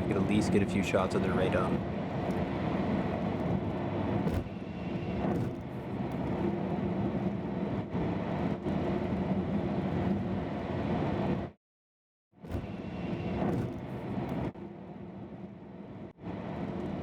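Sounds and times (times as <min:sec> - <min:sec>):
steady engine drone: 0:00.0 - 0:11.5.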